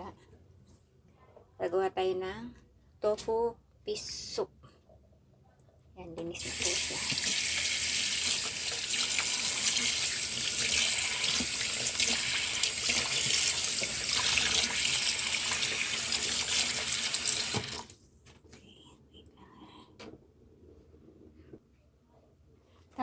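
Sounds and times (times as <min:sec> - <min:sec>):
tap running into sink: 0:06.4 - 0:17.9.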